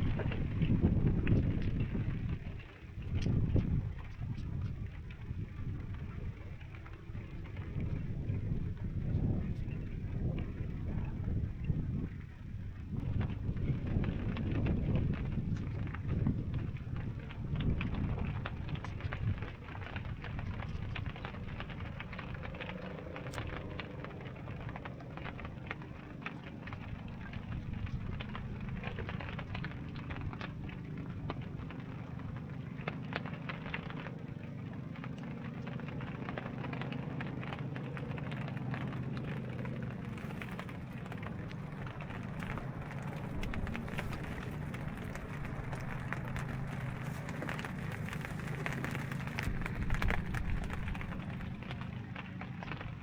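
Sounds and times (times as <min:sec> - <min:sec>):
heavy rain falling: 0:38.1 - 0:51.8.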